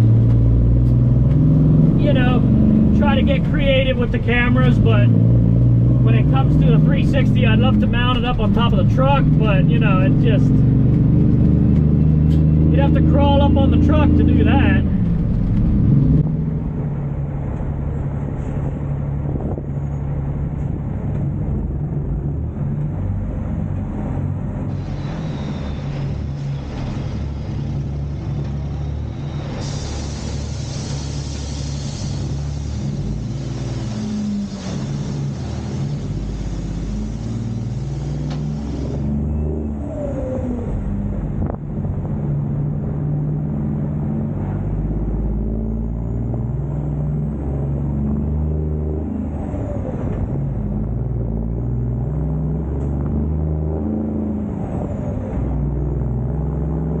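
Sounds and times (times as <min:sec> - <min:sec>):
truck diesel engine running: 0:00.0 - 0:57.0
hiss: 0:24.7 - 0:39.2.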